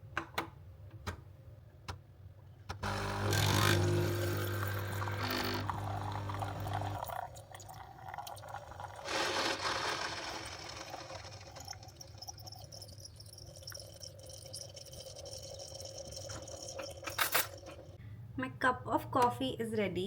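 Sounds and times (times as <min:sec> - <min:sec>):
coffee machine running: 0:02.8 - 0:13.8
coffee streaming into cup: 0:02.8 - 0:18.0.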